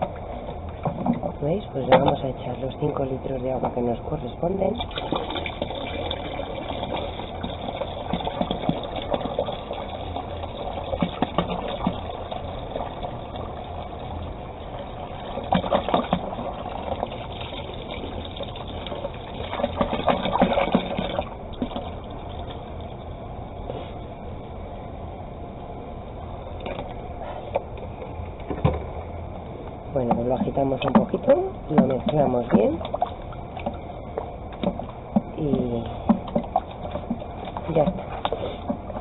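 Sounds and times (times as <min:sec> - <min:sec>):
water pouring into soap: 0:04.7 - 0:22.7.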